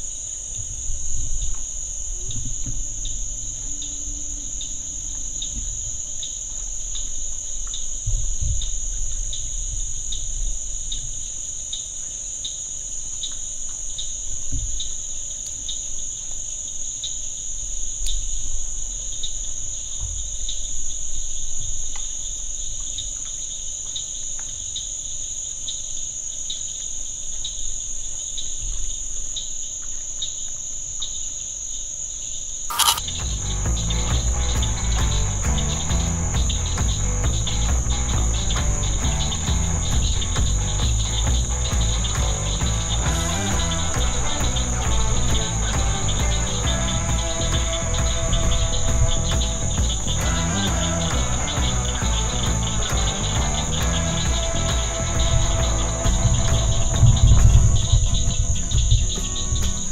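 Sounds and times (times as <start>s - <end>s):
crickets chirping: 0.0s - 59.9s
faint low rumbles and thumps: 0.5s - 11.4s, 33.0s - 59.9s
high-pitched insect drone: 0.9s - 10.2s, 32.7s - 59.9s.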